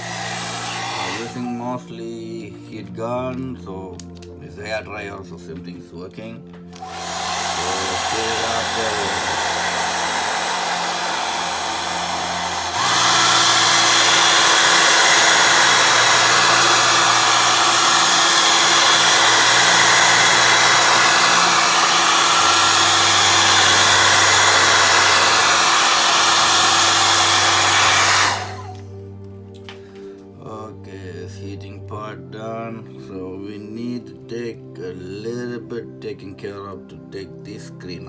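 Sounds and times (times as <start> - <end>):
hair dryer blowing: 0.0 - 1.7, 6.8 - 28.9.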